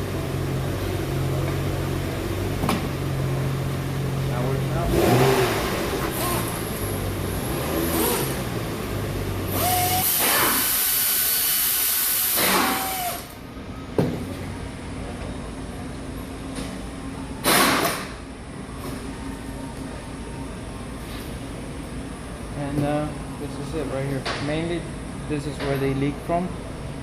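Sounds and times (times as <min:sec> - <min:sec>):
power tool motor spinning: 0:09.5 - 0:11.5, 0:12.2 - 0:13.4.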